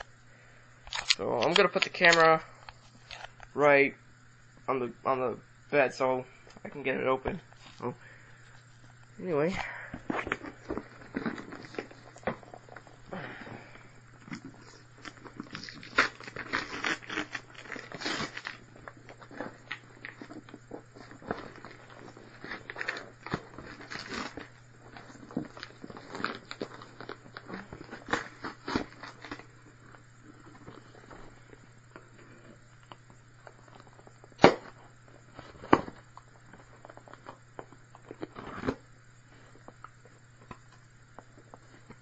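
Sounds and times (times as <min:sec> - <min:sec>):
package wrapping tearing: 0:14.3 - 0:29.5.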